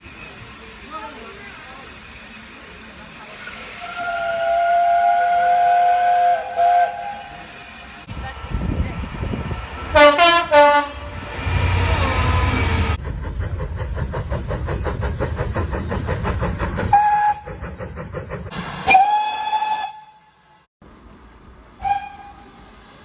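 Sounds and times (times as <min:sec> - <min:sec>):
steam hiss: 0:00.0 - 0:10.0, 0:11.0 - 0:20.6
steam engine chuffing beat: 0:00.0 - 0:20.1
train rumbling: 0:00.0 - 0:23.0
train whistle blasts: 0:03.7 - 0:07.8, 0:09.9 - 0:11.1, 0:18.8 - 0:20.6, 0:21.8 - 0:22.6.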